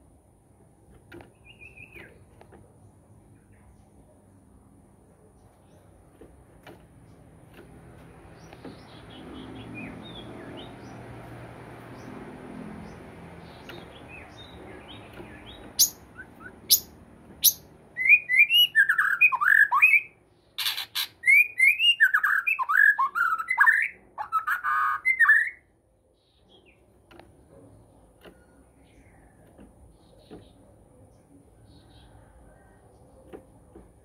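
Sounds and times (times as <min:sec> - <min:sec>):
bird harsh rasping squawks: 0:20.6 - 0:21.4.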